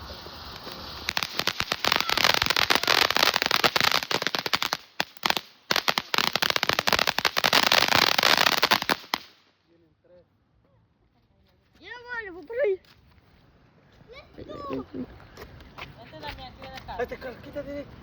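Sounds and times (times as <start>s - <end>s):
firework crackling: 0.0s - 9.6s.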